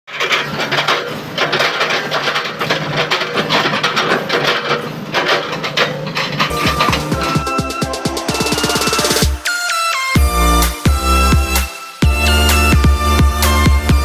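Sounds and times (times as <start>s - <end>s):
diesel engine humming: 6.5s - 9.4s
electronic music with thumping beat: 6.5s - 14.0s.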